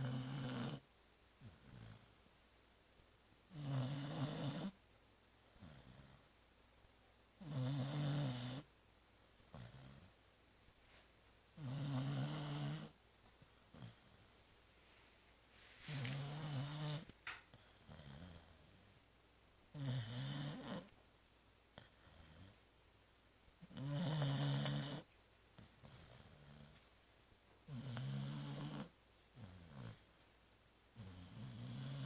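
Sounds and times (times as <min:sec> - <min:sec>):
dog snoring: 0:00.0 - 0:02.2, 0:03.5 - 0:04.8, 0:05.5 - 0:06.3, 0:07.4 - 0:08.7, 0:09.4 - 0:10.2, 0:11.6 - 0:13.0, 0:13.7 - 0:14.3, 0:15.8 - 0:18.9, 0:19.7 - 0:21.0, 0:21.8 - 0:22.6, 0:23.6 - 0:26.8, 0:27.6 - 0:30.1, 0:30.9 - 0:32.0.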